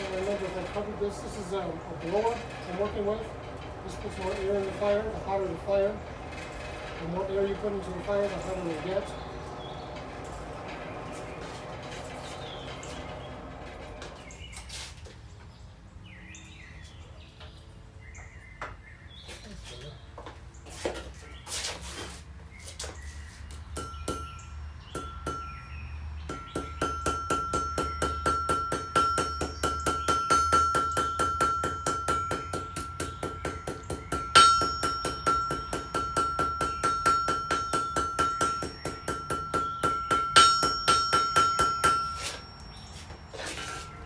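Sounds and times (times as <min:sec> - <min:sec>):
hammer striking iron on anvil: 0:23.8 - 0:43.1
anvil ringing: 0:23.8 - 0:44.0.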